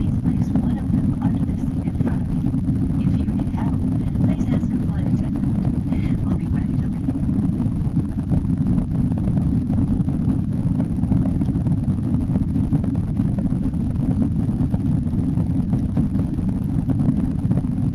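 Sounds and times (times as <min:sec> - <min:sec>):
jet engine and airflow rumble: 0:00.0 - 0:17.9.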